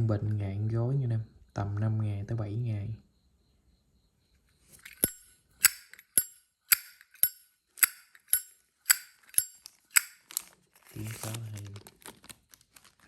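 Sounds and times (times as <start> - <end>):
lighter lid clacking open and shut: 4.8 - 10.2.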